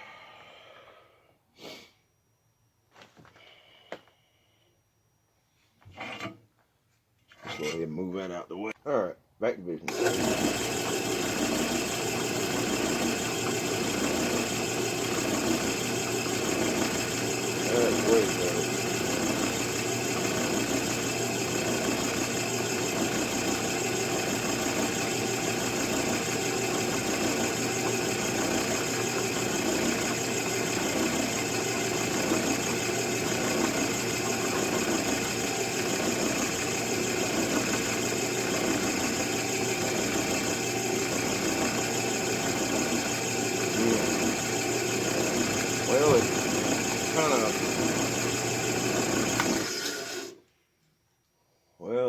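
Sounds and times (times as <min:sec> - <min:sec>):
electric drill running: 0:09.9 - 0:50.4.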